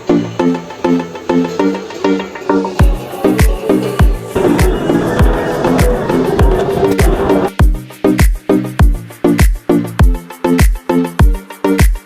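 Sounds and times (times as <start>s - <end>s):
electronic music with kick drum: 2.8s - 12.0s.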